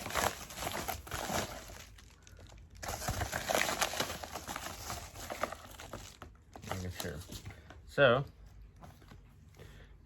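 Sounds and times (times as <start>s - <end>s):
wrapping crinkling and rustling: 0.0s - 7.6s.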